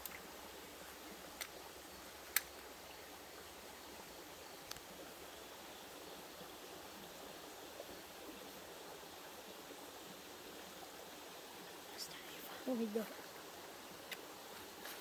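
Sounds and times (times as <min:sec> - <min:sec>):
creek water rushing: 0:00.0 - 0:15.0
faint click: 0:04.7 - 0:04.9.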